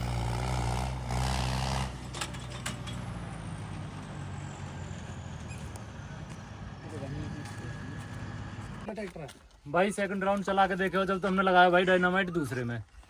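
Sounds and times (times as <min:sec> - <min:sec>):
diesel tractor engines running: 0:00.0 - 0:08.9.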